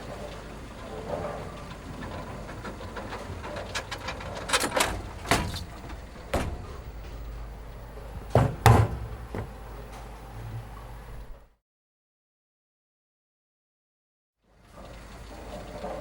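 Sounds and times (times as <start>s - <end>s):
knocks and thumps: 2.9s - 7.4s, 8.1s - 9.7s.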